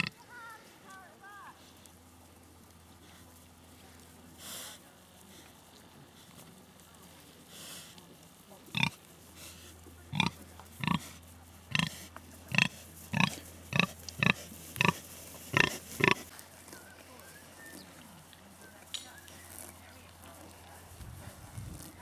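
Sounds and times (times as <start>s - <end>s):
pigs calling: 0.0s - 0.2s, 8.7s - 9.0s, 10.1s - 16.3s.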